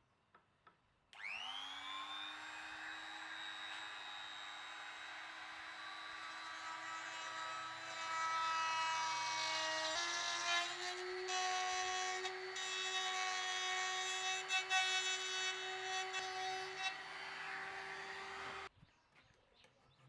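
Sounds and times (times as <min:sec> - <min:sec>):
power tool motor whining: 0:01.2 - 0:18.7.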